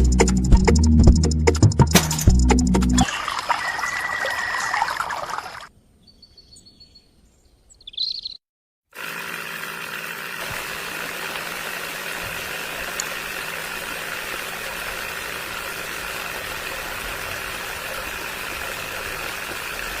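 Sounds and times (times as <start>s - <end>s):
engine humming steadily: 8.9s - 20.0s.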